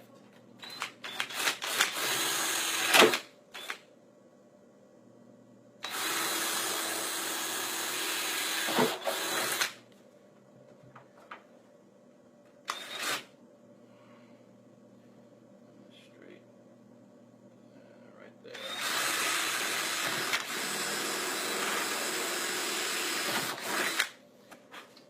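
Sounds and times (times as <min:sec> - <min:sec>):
power drill boring through vinyl: 0:01.1 - 0:03.7, 0:05.8 - 0:09.7, 0:18.6 - 0:24.2.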